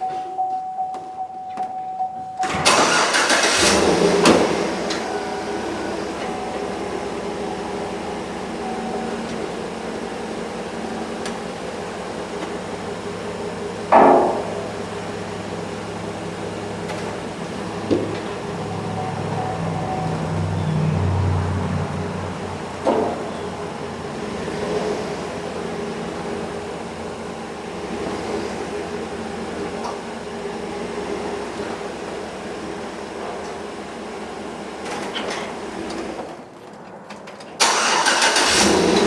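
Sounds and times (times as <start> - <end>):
truck engine running: 2.4 - 36.3, 37.6 - 39.0
loud clunk: 13.9 - 14.7.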